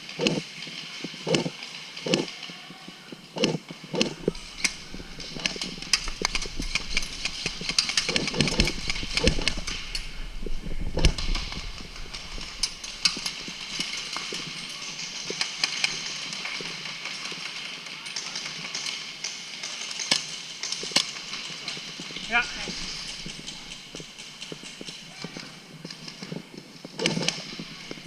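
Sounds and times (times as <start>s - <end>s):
airsoft guns firing: 3.4s - 26.1s.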